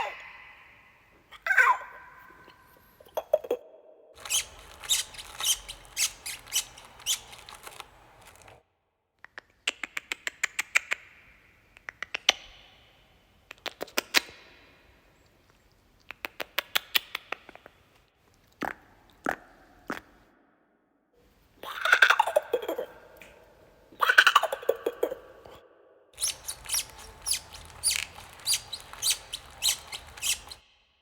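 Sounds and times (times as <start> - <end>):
rapid high-pitched squeaking: 4.2 - 8.4, 26.2 - 30.6.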